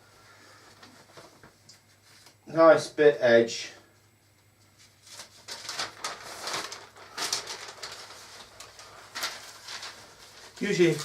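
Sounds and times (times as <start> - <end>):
paper rustling and sliding: 0.3 - 2.4, 4.8 - 11.0.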